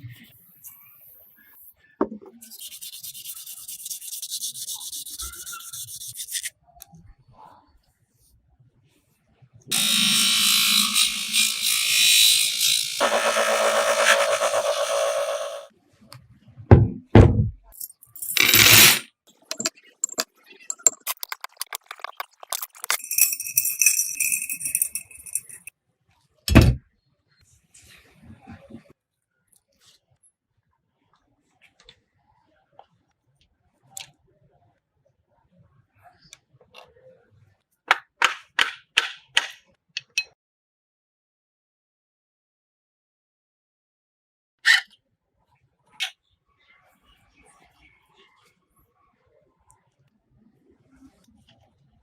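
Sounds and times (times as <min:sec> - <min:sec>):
sandpaper sanding strokes: 0:02.4 - 0:06.4, 0:09.7 - 0:15.7
metal parts jingling: 0:17.8 - 0:25.7.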